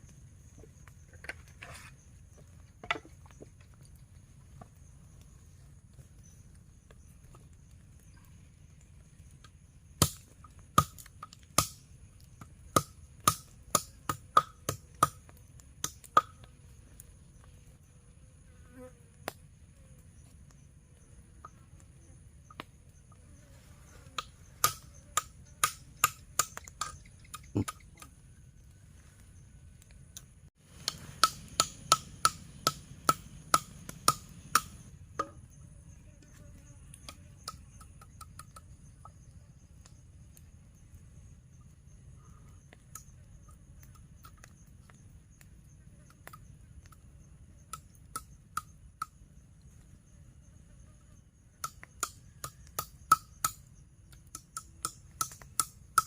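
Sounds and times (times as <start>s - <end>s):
sharp wooden knocks: 30.8s - 35.4s.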